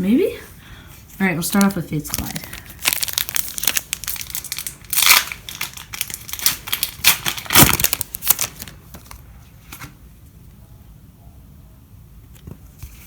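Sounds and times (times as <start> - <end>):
foil wrapper crinkling: 1.4 - 9.9
foil wrapper tearing: 1.6 - 9.2.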